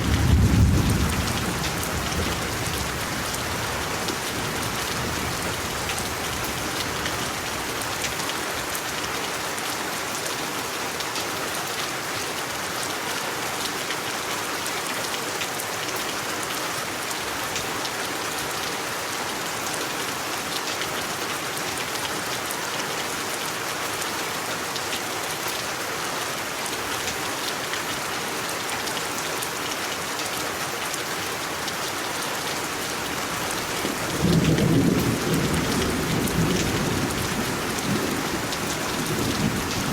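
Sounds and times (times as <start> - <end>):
low thunder rumble: 0.0 - 3.6
steady rain falling: 0.0 - 39.9.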